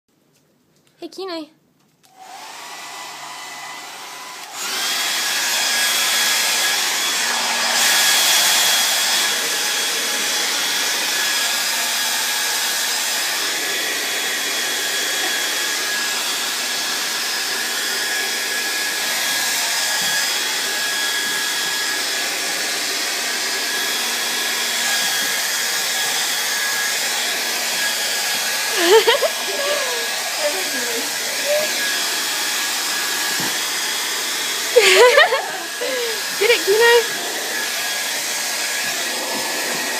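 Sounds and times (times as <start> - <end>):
blow dryer running: 2.1 - 39.9.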